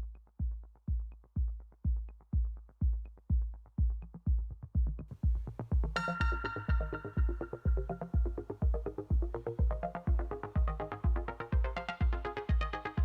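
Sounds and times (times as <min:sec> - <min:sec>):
deep kick drum: 0:00.0 - 0:13.0
electronic music: 0:05.4 - 0:13.0.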